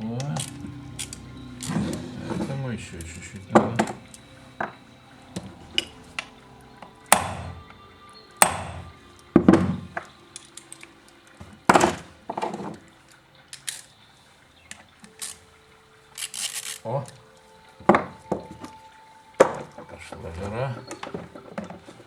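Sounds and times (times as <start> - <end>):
sharp metal knocks: 7.0 - 7.8, 8.4 - 10.1.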